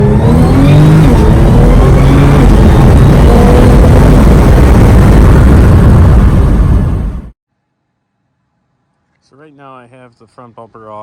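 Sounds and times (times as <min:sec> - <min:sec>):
car engine running hard: 0:00.0 - 0:07.3.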